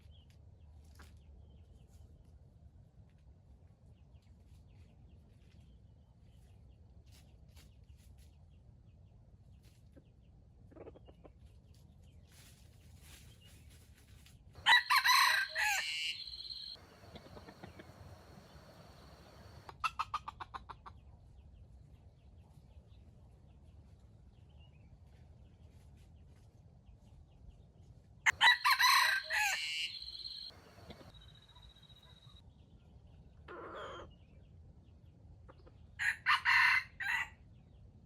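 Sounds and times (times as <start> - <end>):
rooster crowing: 14.6 - 19.6, 28.3 - 31.1, 36.0 - 37.3
rooster clucking: 14.6 - 20.9, 28.3 - 31.1.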